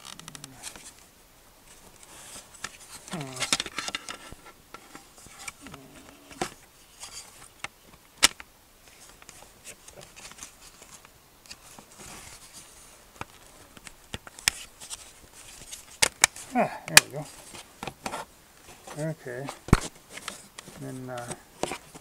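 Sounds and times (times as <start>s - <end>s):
plastic parts clicking and knocking: 2.5s - 8.5s, 18.8s - 22.0s.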